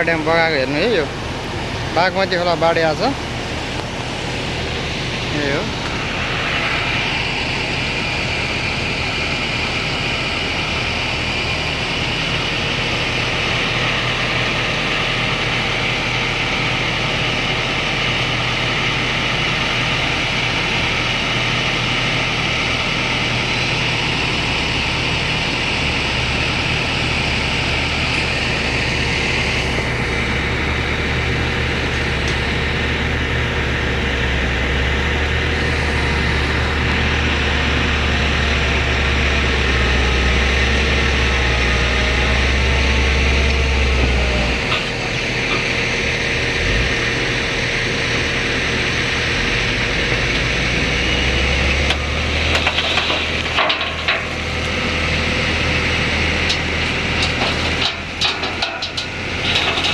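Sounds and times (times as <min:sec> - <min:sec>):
floodwater rushing: 0:00.0 - 0:17.3
diesel engine humming: 0:00.0 - 0:59.9.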